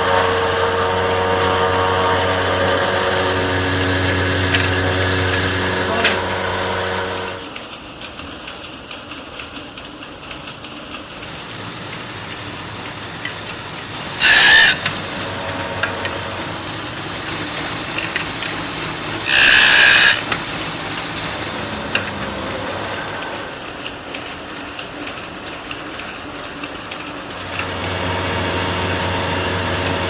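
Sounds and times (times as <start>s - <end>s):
workshop machine noise: 0.0s - 30.0s
loud hissing blasts: 11.1s - 23.6s.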